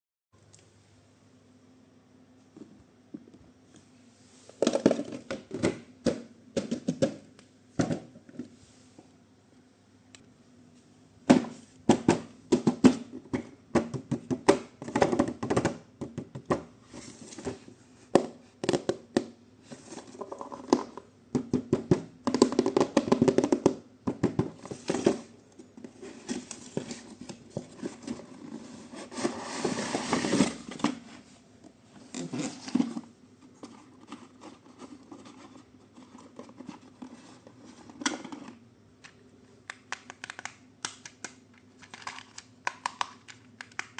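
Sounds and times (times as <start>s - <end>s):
packaging rustling scrape: 25.9s - 31.3s.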